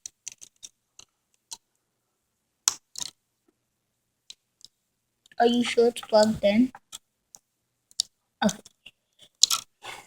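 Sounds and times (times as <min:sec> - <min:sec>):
small clicks and taps: 0:00.0 - 0:01.8, 0:02.6 - 0:03.6, 0:06.0 - 0:09.7.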